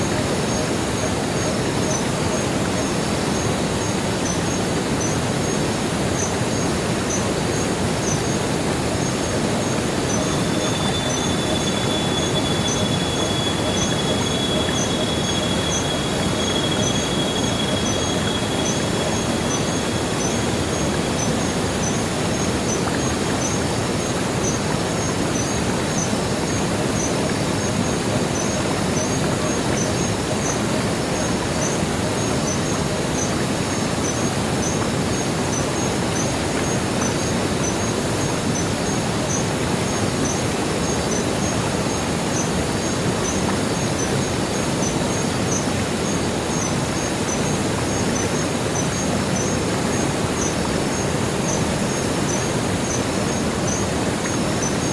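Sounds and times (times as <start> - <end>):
waterfall rushing: 0.0 - 54.9
faint high chirps: 9.7 - 22.1
thin high whine: 9.7 - 22.4.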